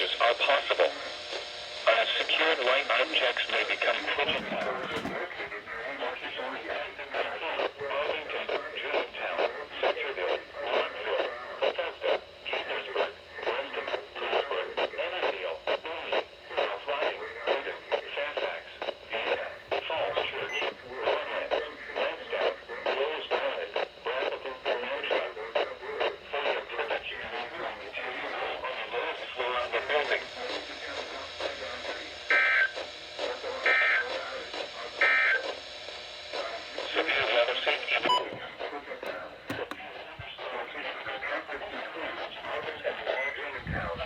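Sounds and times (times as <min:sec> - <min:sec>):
voice talking through radio speaker: 0:00.0 - 0:35.6, 0:36.3 - 0:44.0
two-tone digital chirps: 0:38.1 - 0:38.4.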